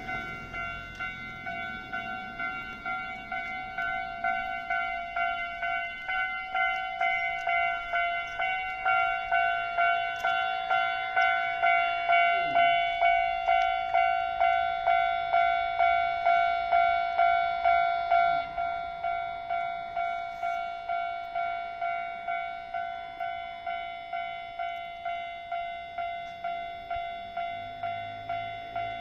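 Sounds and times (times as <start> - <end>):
level-crossing warning bell ringing: 0.0 - 29.0.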